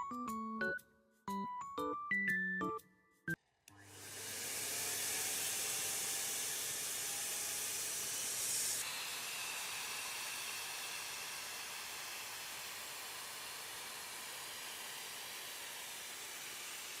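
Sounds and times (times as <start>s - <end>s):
pet blow dryer blowing air: 3.8s - 17.0s.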